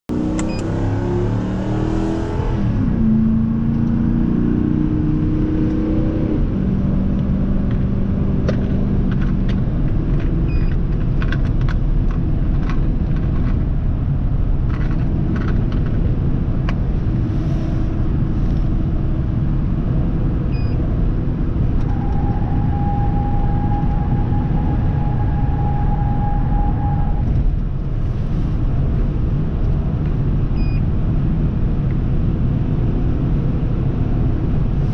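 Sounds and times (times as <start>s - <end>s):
car engine and road noise: 0.1s - 34.9s.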